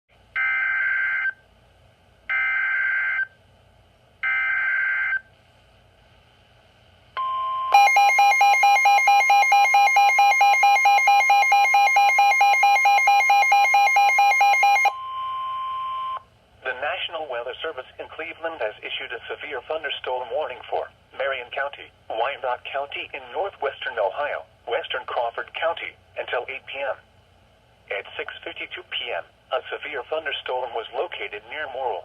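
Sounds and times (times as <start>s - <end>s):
steady warning alarm tone: 7.2s - 16.2s.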